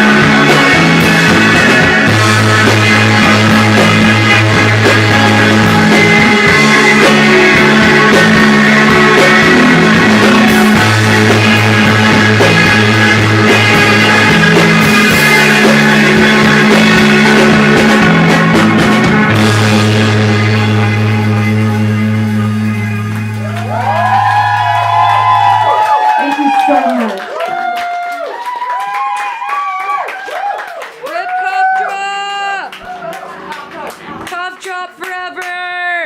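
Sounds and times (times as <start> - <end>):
bass holding long notes: 0.0 - 27.3
rock band playing live: 0.0 - 27.3.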